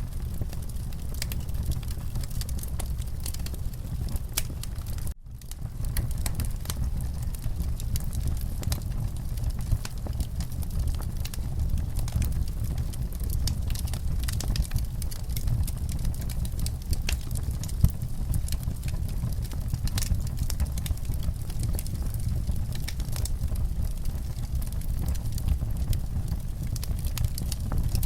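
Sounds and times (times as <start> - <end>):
fire crackling with pops: 0.0 - 28.0
low fire rumble: 0.0 - 28.0.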